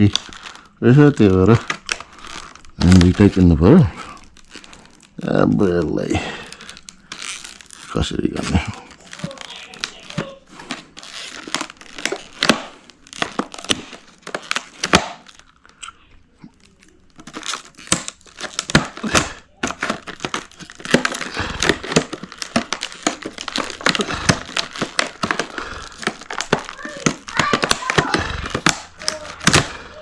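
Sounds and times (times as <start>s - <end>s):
packaging crinkling and tearing: 0.0s - 30.0s.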